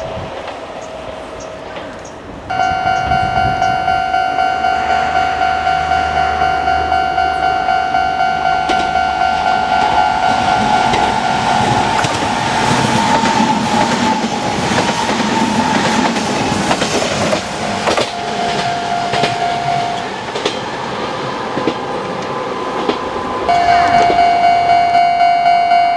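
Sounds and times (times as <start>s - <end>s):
level crossing warning bell dinging: 2.5s - 13.2s, 17.7s - 20.1s, 23.5s - 25.9s
train wheels clacking over rail joints: 8.6s - 20.8s, 21.5s - 23.1s.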